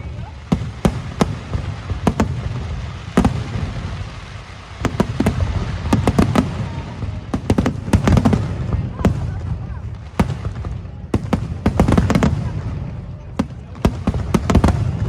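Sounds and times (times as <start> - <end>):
fireworks bangs and crackles: 0.0 - 15.0.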